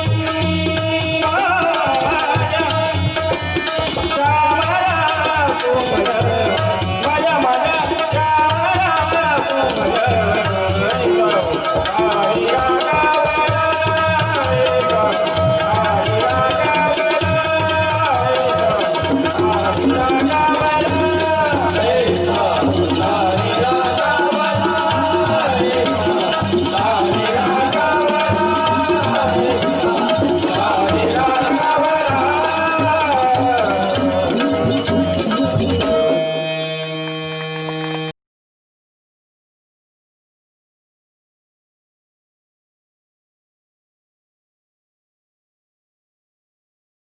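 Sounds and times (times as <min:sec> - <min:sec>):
person singing devotional song: 0:00.0 - 0:38.1
held accompanying tones: 0:11.0 - 0:37.1.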